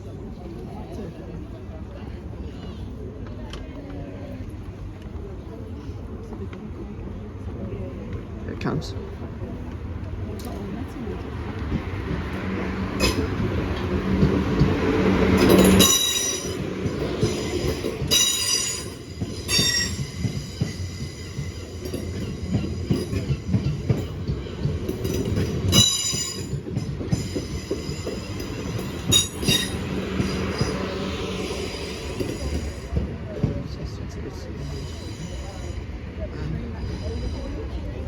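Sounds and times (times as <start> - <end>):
train rumbling past: 0.0 - 38.0
wheels clicking over rail joints: 11.6 - 31.4
train wheels squealing: 15.4 - 32.9, 34.5 - 36.0.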